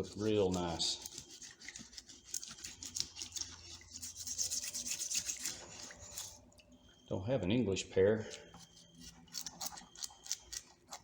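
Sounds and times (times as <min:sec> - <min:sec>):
scrubbing on metal tool: 0:00.0 - 0:06.5.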